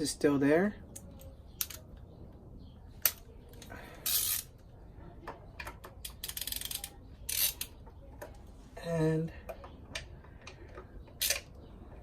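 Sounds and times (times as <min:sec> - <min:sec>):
torque wrench ratcheting: 0:04.0 - 0:04.5, 0:06.0 - 0:07.7, 0:11.2 - 0:11.4.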